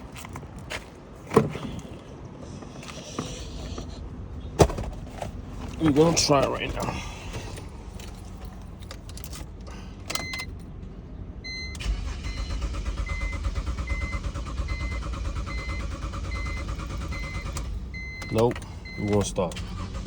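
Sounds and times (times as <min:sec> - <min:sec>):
starter cranking engine: 0:11.8 - 0:20.0.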